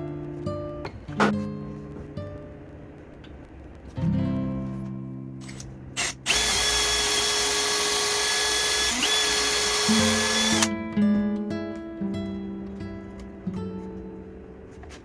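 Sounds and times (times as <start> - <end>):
acoustic guitar music: 0.0 - 6.2, 9.9 - 15.0
electric drill whining: 6.0 - 10.7.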